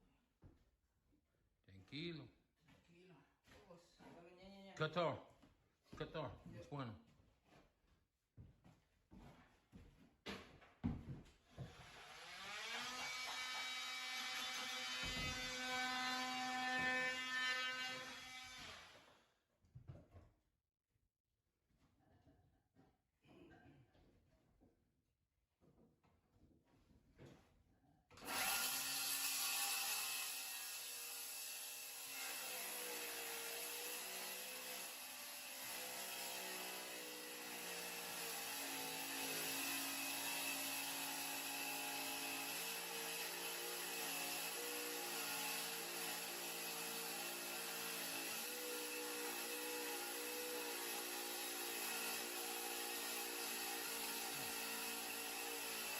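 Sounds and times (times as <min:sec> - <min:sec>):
power tool motor whining: 0:28.2 - 0:55.9.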